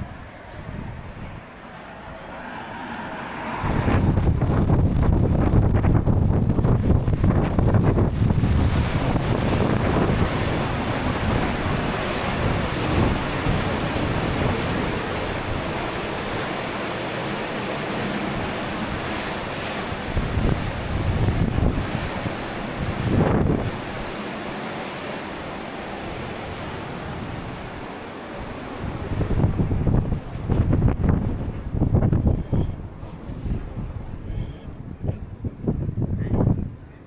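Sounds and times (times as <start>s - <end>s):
sea surf washing: 0.0s - 36.6s
wind buffeting microphone: 0.0s - 37.0s.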